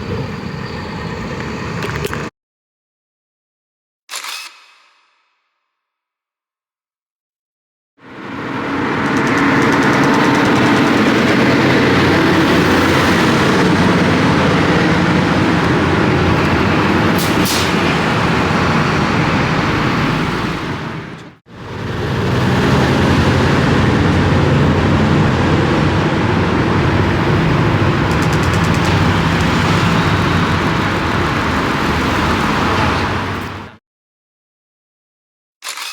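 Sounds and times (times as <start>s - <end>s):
heavy trucks engine hum: 0.0s - 2.3s, 8.0s - 33.8s
road noise: 0.0s - 2.3s, 8.0s - 33.8s.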